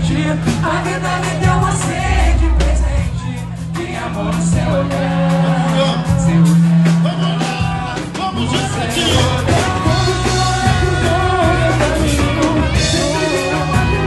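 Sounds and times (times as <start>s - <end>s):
samba group playing: 0.0s - 14.0s.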